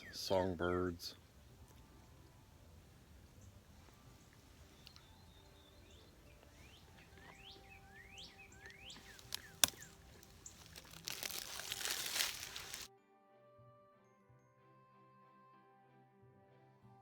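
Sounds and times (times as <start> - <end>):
songbirds whistling: 3.4 - 10.7
rustling noise: 8.6 - 12.9.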